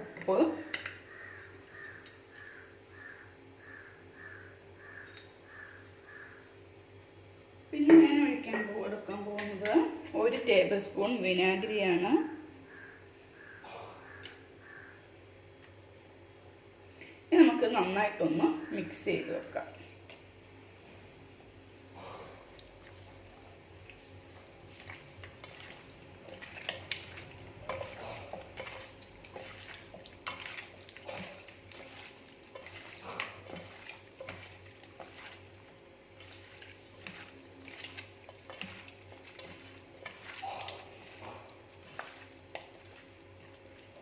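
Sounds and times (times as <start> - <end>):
low background hum: 0.0 - 44.0
wet squishing and scraping: 22.0 - 44.0.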